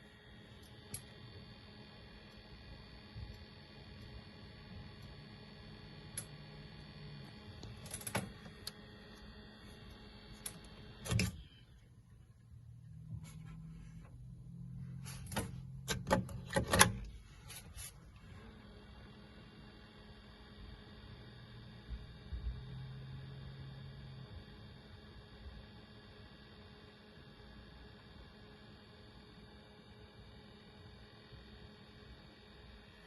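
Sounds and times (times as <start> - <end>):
fan whining: 0.0 - 20.6
low hum: 0.0 - 23.4.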